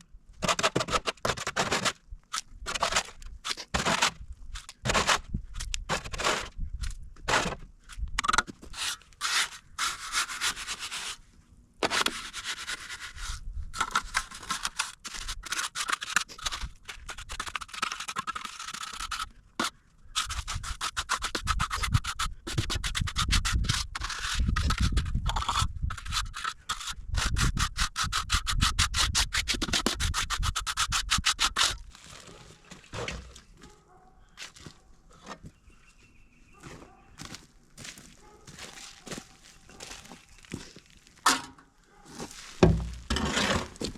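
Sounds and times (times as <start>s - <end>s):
hand tool scraping rough material: 2.6s - 6.6s, 8.6s - 11.2s, 11.8s - 33.5s, 38.5s - 43.9s.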